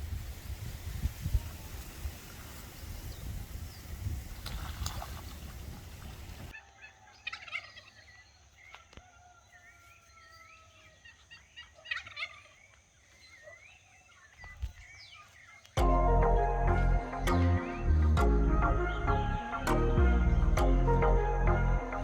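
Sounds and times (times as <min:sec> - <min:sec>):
turkey gobbling: 0:06.0 - 0:09.9, 0:10.6 - 0:14.4.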